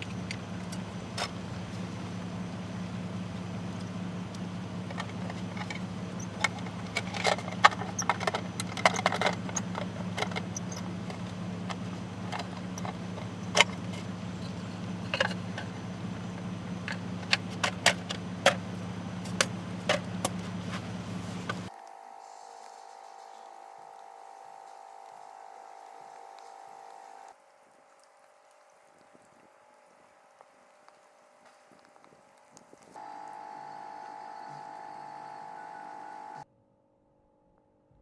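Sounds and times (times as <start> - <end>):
light clinks and rattles: 0.0 - 21.7
steady low hum: 0.0 - 27.3.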